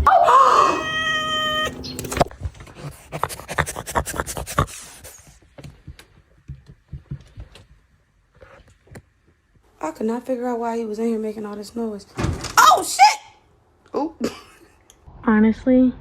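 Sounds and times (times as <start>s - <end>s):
cat meowing: 0.0s - 2.0s.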